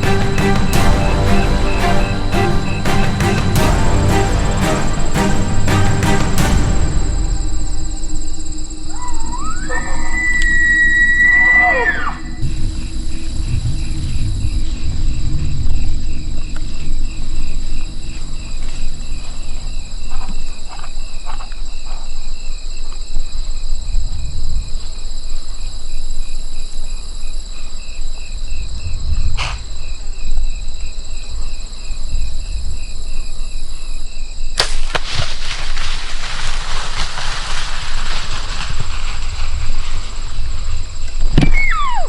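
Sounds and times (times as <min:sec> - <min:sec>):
pulsing high chirp: 0:00.0 - 0:14.2
rushing noise: 0:00.0 - 0:15.1
wind rumbling on microphone: 0:12.0 - 0:42.0
bow releasing arrow crack: 0:34.6 - 0:40.5.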